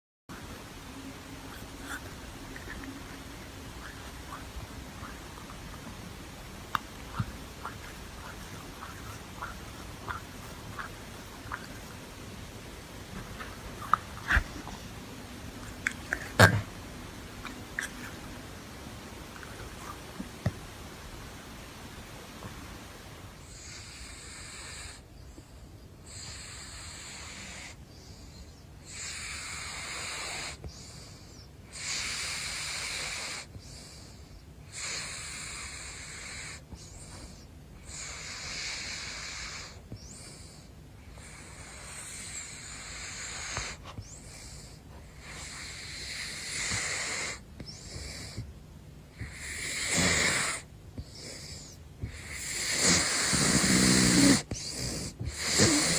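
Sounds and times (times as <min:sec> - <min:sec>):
wild cat snoring: 0:15.6 - 0:16.7, 0:49.2 - 0:55.9.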